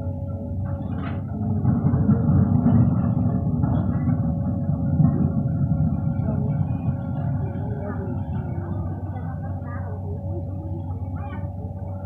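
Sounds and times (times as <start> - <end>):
diesel engine rumbling: 0.0 - 12.0.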